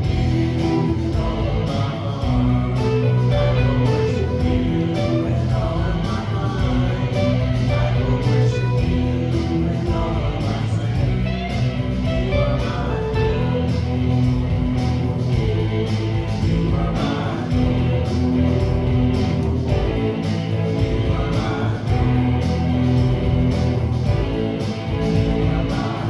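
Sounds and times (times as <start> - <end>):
steady beat: 0.0 - 26.0
strummed guitar: 0.0 - 26.0
person singing: 0.3 - 14.2.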